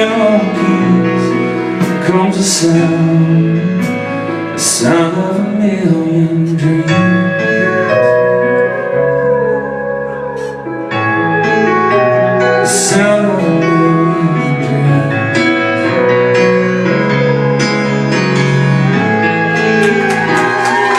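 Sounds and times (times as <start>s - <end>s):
live band playing country ballad: 0.0s - 20.9s.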